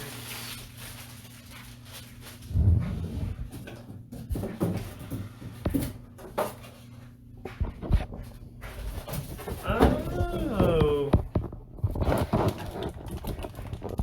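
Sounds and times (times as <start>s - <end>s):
packaging rustling: 0.0s - 3.0s.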